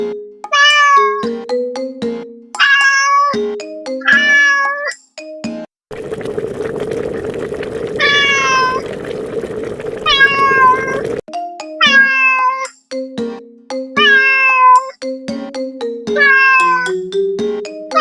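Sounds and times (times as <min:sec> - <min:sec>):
cat meowing: 0:02.6 - 0:03.4, 0:04.1 - 0:04.9, 0:14.0 - 0:14.9, 0:16.2 - 0:16.8.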